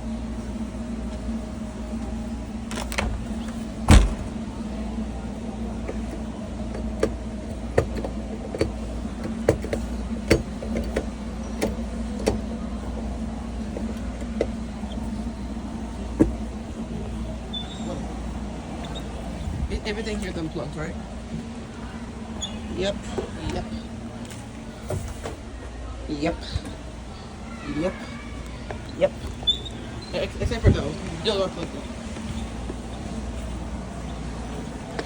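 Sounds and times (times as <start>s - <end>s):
low machinery hum: 0.0s - 35.0s
loud thump: 3.9s - 4.4s.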